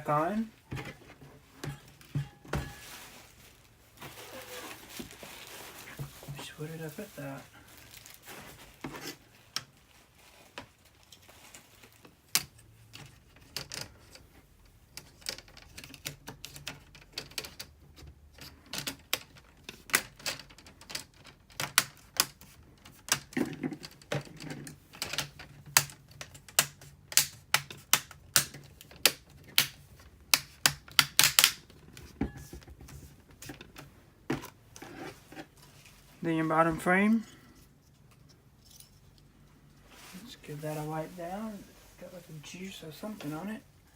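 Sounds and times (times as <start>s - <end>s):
plastic clips snapping into place: 25.0s - 31.6s.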